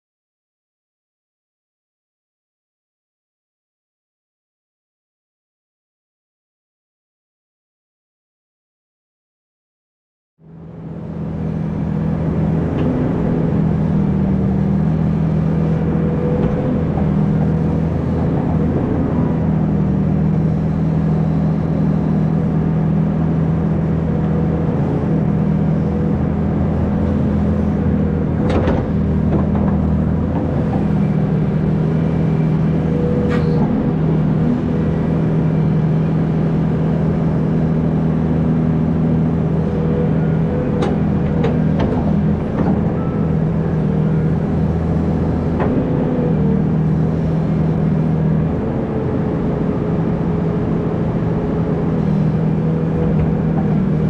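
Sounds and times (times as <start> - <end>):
excavator diesel engine running: 10.4 - 54.0.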